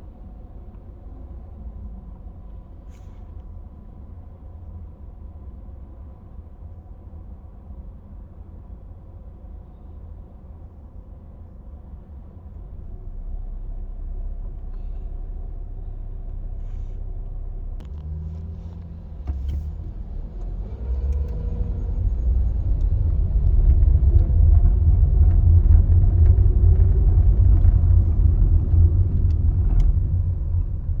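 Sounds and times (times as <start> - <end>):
car cabin engine rumble: 8.6 - 31.0.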